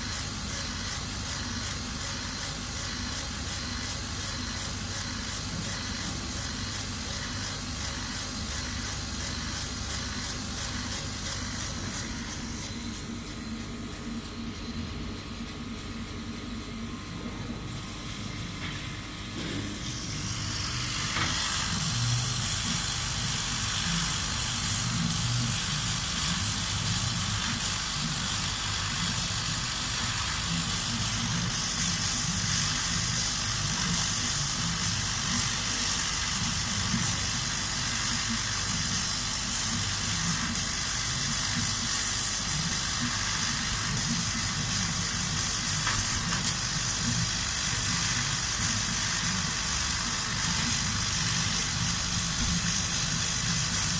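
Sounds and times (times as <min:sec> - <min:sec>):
laser cutting machine hissing: 0:00.0 - 0:53.9.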